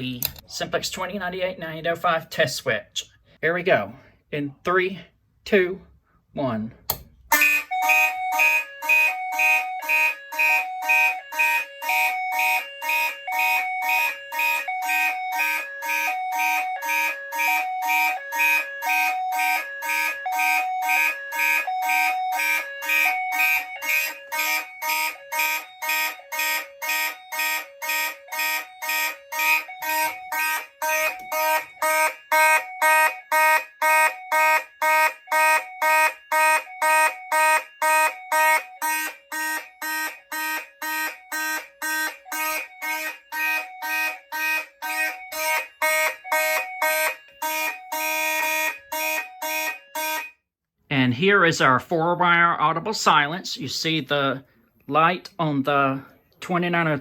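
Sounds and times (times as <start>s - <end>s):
steady high alarm tones: 7.3s - 50.4s
two-tone pulsing fire alarms: 7.3s - 50.5s.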